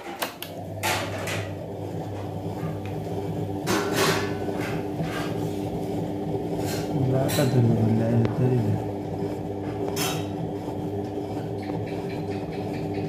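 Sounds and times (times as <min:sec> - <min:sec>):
steady low hum: 0:00.4 - 0:13.0.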